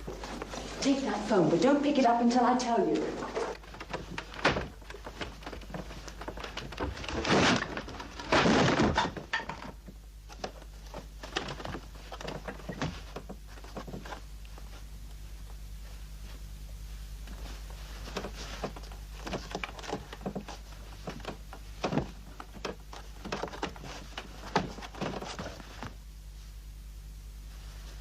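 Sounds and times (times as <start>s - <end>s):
knocks and thuds: 3.5s - 14.2s, 18.0s - 26.0s.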